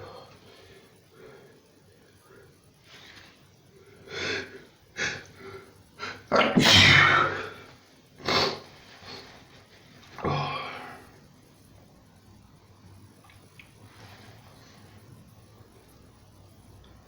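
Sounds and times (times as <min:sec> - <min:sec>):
person sneezing: 0:06.0 - 0:07.6.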